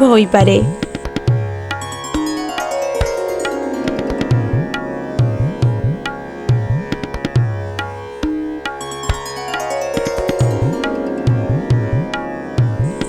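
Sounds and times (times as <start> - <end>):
plucked melodic runs: 0.0 - 13.0
tabla strokes: 0.0 - 13.0
low bending bass beats: 10.6 - 13.0.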